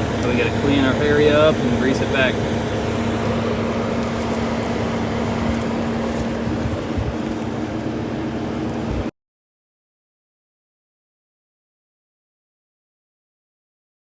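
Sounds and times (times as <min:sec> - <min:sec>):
skid steer diesel engine humming: 0:00.0 - 0:09.1.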